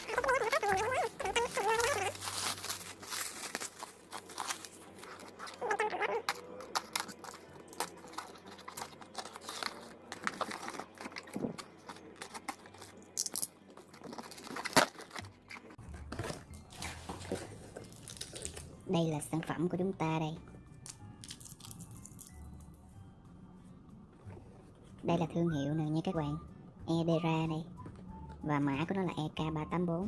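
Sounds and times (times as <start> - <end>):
packaging crinkling and rustling: 0.0 - 18.7.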